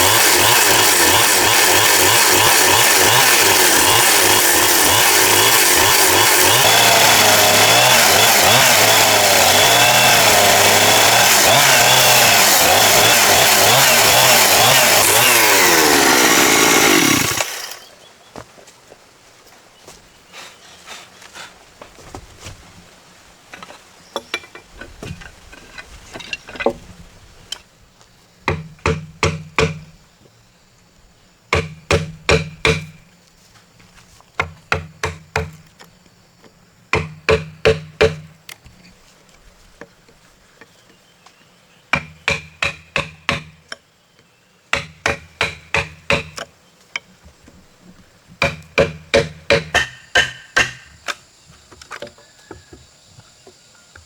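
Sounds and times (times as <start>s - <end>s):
hammer striking wood: 28.5s - 29.9s, 31.5s - 33.0s, 34.4s - 35.6s, 36.9s - 38.3s, 41.9s - 43.6s, 44.7s - 46.5s, 48.4s - 51.0s.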